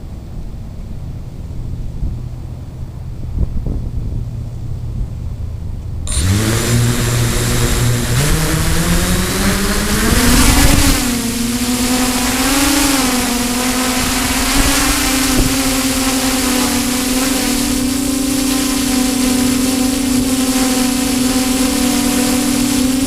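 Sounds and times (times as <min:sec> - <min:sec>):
wind rumble on microphone: 0:00.0 - 0:23.0
drone motors whirring: 0:06.1 - 0:23.0.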